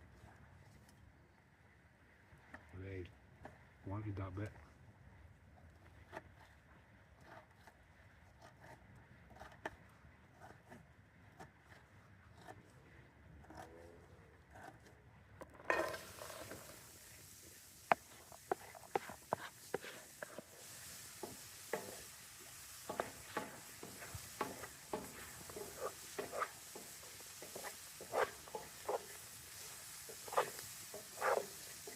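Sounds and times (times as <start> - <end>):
utensil scraping a pan: 14.5 - 31.9
food sizzling in a pan: 15.7 - 31.9.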